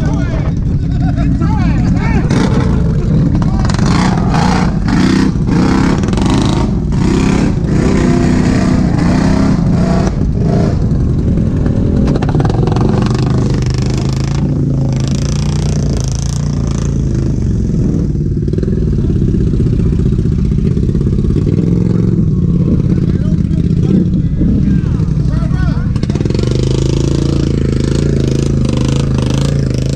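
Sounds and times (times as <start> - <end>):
atv engine revving: 0.0 - 29.9
clatter: 11.5 - 17.0.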